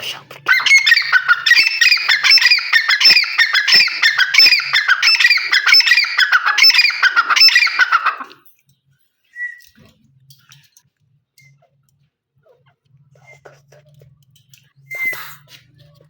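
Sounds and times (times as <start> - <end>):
francolin calling shrilly: 0.5 - 8.3.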